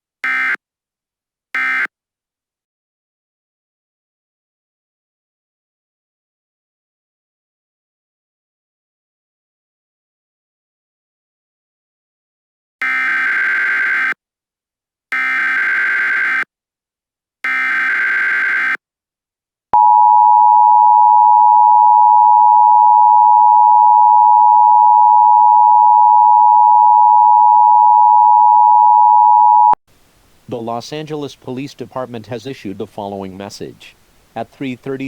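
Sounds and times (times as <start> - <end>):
buzzing data bursts: 17.5 - 18.8.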